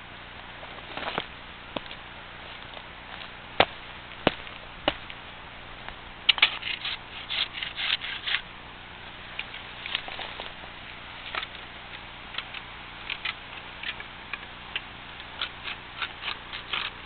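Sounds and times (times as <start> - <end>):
hand saw strokes on log: 6.4 - 8.4.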